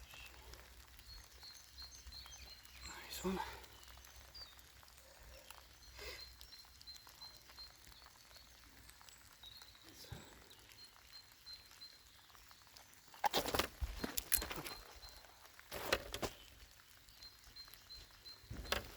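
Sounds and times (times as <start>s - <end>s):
faint high chirps: 0.0s - 18.9s
rustling and knocking handling noise: 15.7s - 16.5s.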